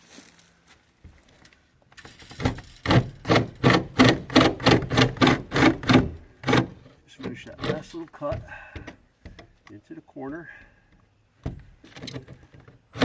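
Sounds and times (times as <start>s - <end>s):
saw cutting through wood: 2.8s - 6.8s.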